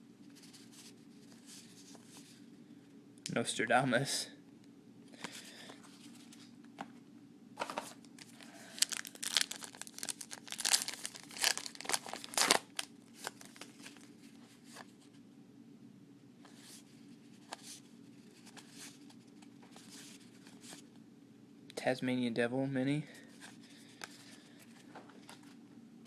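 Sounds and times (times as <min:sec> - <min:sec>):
faint paper rustles: 0:00.2 - 0:02.5, 0:05.2 - 0:06.6, 0:07.6 - 0:15.2, 0:16.4 - 0:20.9, 0:23.1 - 0:25.6
wrapper tearing and crinkling: 0:08.2 - 0:14.1.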